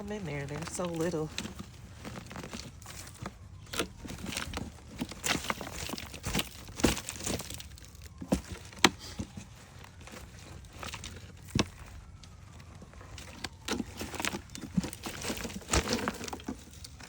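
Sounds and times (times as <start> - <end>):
digging in soil by hand: 0.0 - 17.0.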